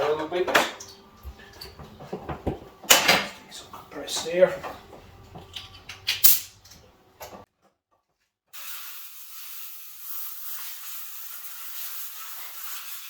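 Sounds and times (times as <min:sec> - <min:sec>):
compressed air hissing: 0:06.2 - 0:06.6, 0:08.6 - 0:13.0.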